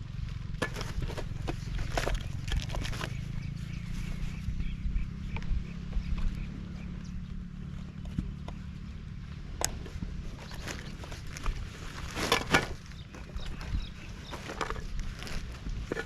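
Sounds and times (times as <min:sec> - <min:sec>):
steady low rumble: 0:00.0 - 0:16.0
camping gear clicks and rustles: 0:00.1 - 0:04.4, 0:07.6 - 0:16.0.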